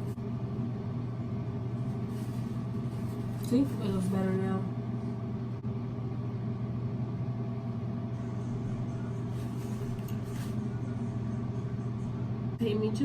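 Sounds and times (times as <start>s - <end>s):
low steady hum: 0.0s - 13.0s
faint soft rustle: 2.0s - 4.1s.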